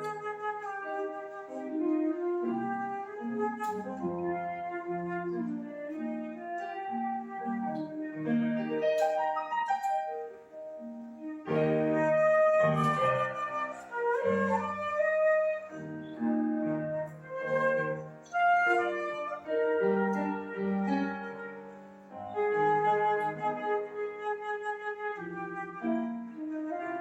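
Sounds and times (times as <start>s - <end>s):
flute melody: 0.0s - 27.0s
piano accompaniment: 0.0s - 27.0s.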